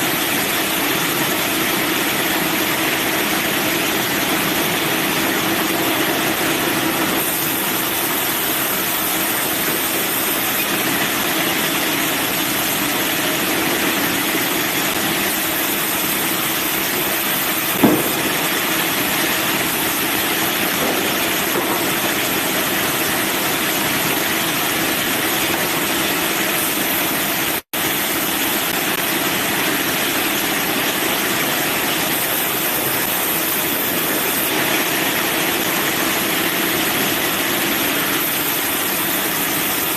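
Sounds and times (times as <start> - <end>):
band sawmill running: 0.0 - 39.9
sharp knock: 17.8 - 18.7.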